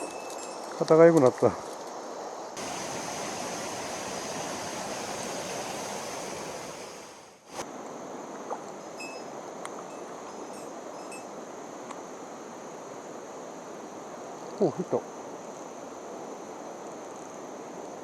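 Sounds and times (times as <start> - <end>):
mountain stream rushing: 2.6 - 7.6.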